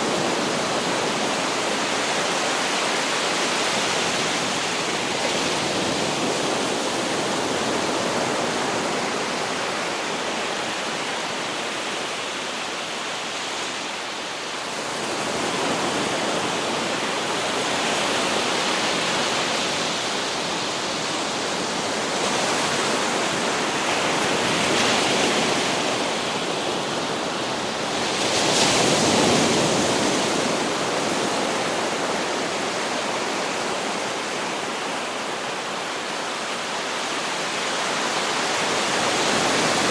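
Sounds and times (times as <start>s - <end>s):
ocean surf breaking: 14.7s - 36.2s.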